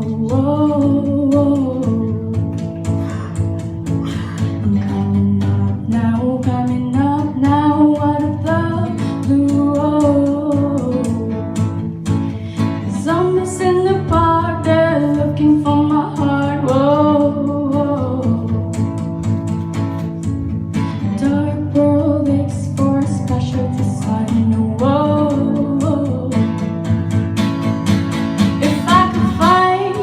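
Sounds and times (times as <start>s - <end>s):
girl singing: 0.0s - 3.3s, 4.6s - 11.6s, 12.8s - 18.8s, 21.1s - 26.6s, 28.6s - 30.0s
strummed guitar chords: 0.0s - 30.0s.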